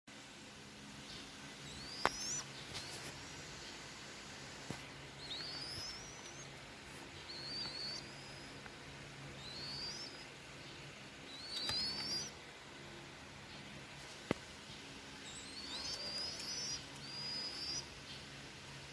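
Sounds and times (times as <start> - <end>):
faint low hum: 0.1 - 18.9
bird whistling rising calls: 1.6 - 3.1, 5.1 - 6.6, 7.2 - 8.6, 9.3 - 12.4, 15.2 - 18.0
sharp clicks: 11.5 - 12.3.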